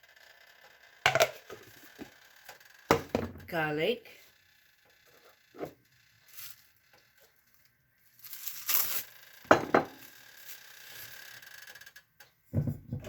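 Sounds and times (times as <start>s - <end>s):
container knocking on counter: 2.9s - 3.4s, 9.5s - 10.0s, 12.6s - 13.0s
packaging rustling: 8.2s - 9.1s.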